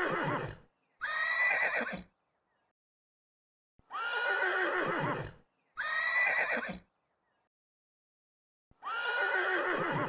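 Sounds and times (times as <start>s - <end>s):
horse whinnying: 0.0s - 2.1s, 3.9s - 6.8s, 8.8s - 10.0s.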